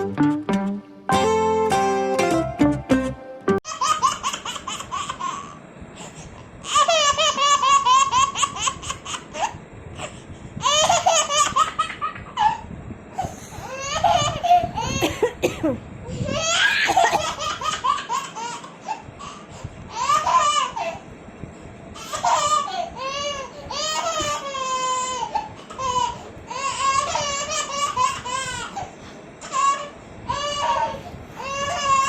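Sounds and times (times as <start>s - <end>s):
strummed guitar music: 0.0s - 3.6s
baby laughing: 3.7s - 5.6s, 6.6s - 9.6s, 10.6s - 12.6s, 16.4s - 21.0s, 22.0s - 32.0s.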